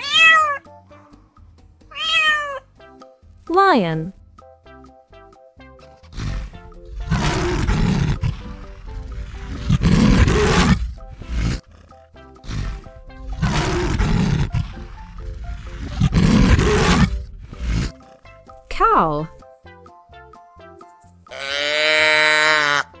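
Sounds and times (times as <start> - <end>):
light background music: 0.0 - 23.0
lion roaring: 5.8 - 19.4.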